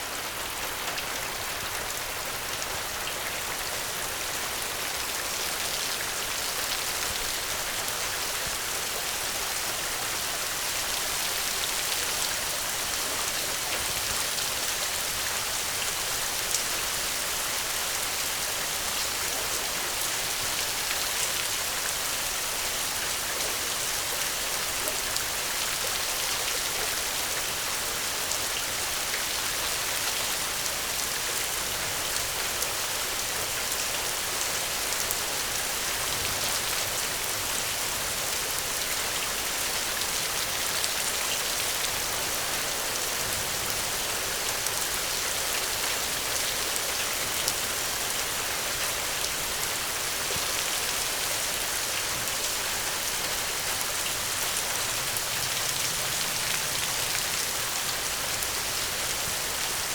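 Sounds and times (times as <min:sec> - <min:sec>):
steady rain falling: 0:00.0 - 0:59.9.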